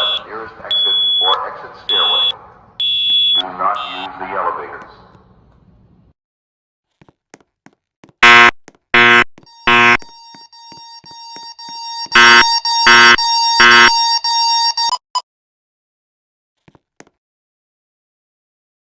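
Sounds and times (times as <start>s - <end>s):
fire alarm horn blasts: 0.0s - 4.1s, 8.2s - 15.0s.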